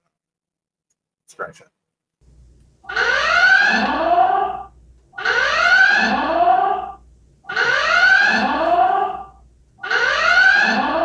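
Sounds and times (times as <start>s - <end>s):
electronic alarm whooping: 2.8s - 11.0s.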